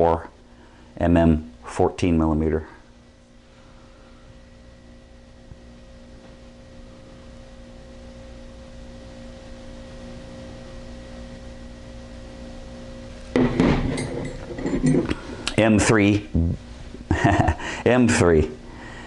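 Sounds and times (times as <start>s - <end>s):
steady tonal hum: 0.0s - 19.0s.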